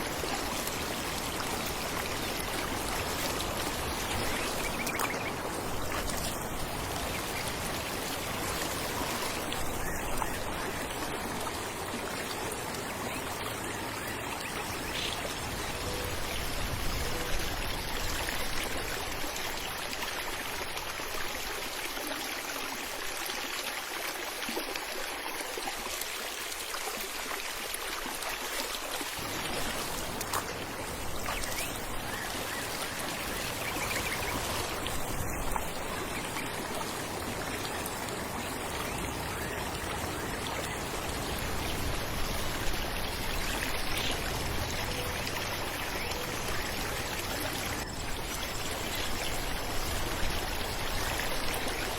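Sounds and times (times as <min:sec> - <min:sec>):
water rushing and splashing: 0:00.0 - 0:51.9.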